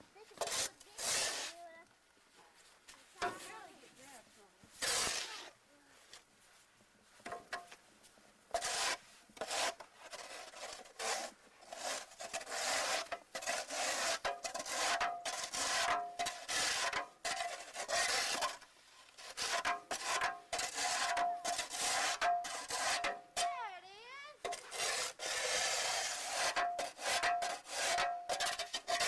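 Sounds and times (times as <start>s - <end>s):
snow crunching and scraping: 2.6s - 7.2s.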